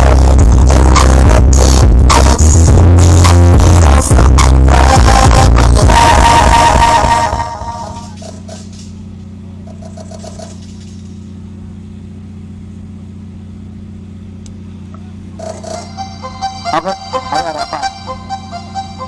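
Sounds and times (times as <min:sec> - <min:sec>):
loud music: 0:00.0 - 0:08.2, 0:15.6 - 0:19.0
low hum: 0:00.0 - 0:19.0.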